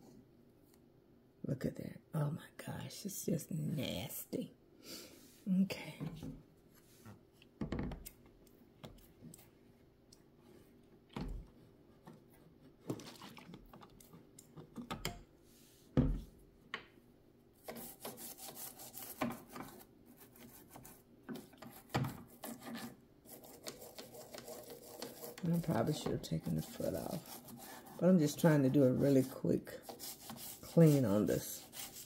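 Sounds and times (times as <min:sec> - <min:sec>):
scraping and rubbing grime: 0:17.6 - 0:32.0.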